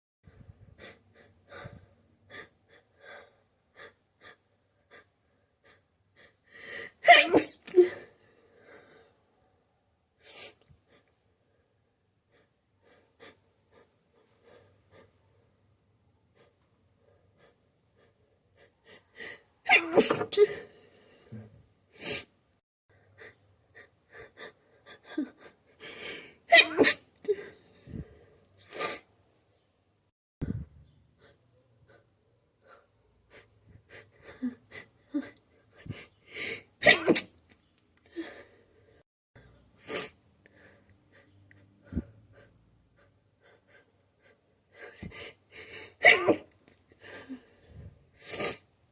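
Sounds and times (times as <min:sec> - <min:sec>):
person sneezing: 0:07.0 - 0:08.0, 0:19.7 - 0:20.7, 0:26.5 - 0:27.4, 0:36.8 - 0:37.3, 0:46.0 - 0:46.5
person's catching breaths: 0:27.2 - 0:29.0.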